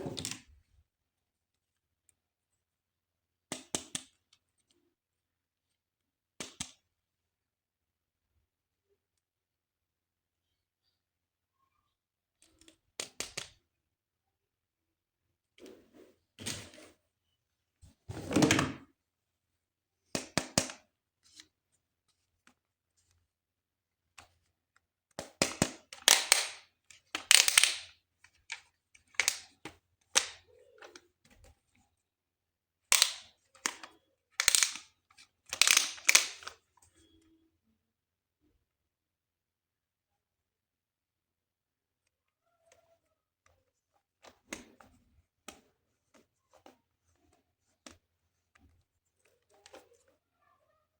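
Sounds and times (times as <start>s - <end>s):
plastic toy parts clicking: 25.5s - 27.9s, 32.9s - 36.6s.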